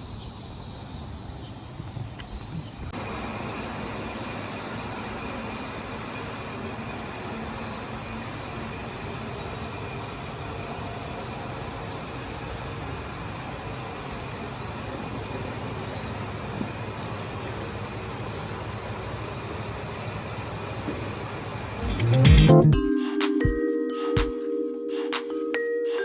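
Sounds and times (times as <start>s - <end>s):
railcar rumbling on rails: 0.0s - 22.1s.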